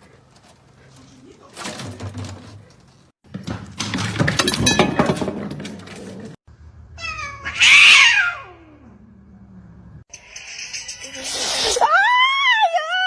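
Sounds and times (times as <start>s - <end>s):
knocks and rustling: 0.0s - 6.4s
cat meowing: 7.0s - 8.8s.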